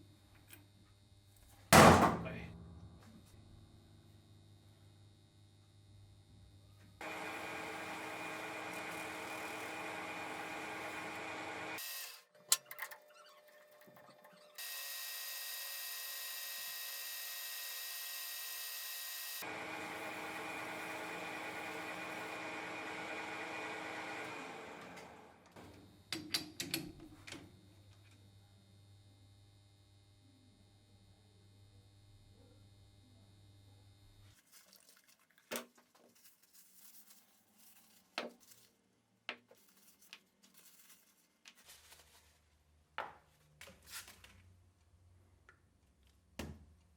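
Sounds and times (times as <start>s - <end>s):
power tool running: 7.0s - 12.6s, 14.6s - 25.6s.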